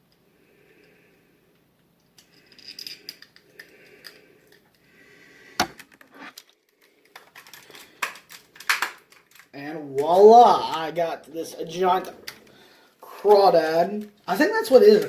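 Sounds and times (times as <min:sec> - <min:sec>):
plastic toy parts clicking: 0:05.8 - 0:10.9.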